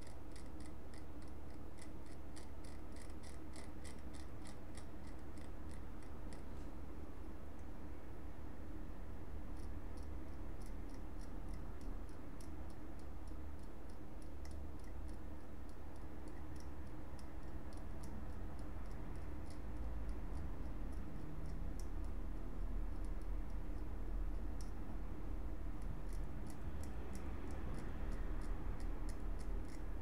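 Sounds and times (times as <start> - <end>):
dry scratchy scraping ticks: 0.0 - 6.5, 9.6 - 22.2, 25.8 - 30.0
steady low hum: 0.0 - 30.0.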